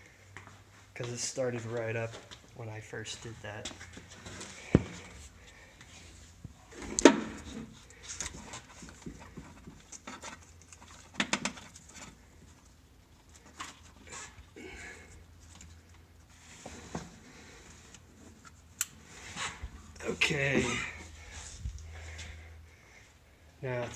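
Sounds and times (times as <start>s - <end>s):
wiring clicks and rustles: 1.0s - 14.6s.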